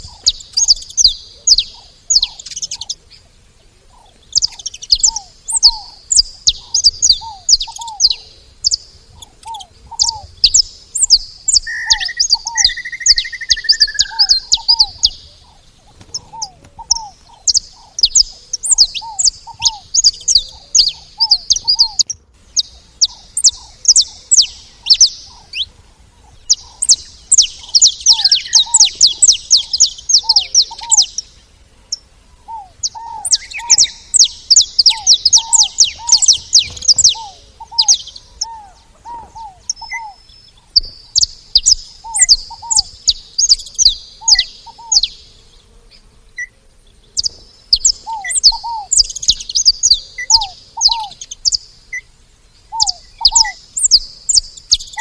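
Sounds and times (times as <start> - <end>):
finches chirping: 0.0 - 55.0
bird downslurred notes: 3.9 - 31.3, 31.9 - 45.8
bird whistle: 4.3 - 15.3, 16.0 - 25.7, 26.4 - 31.3, 32.5 - 45.2, 47.2 - 52.1, 52.7 - 55.0.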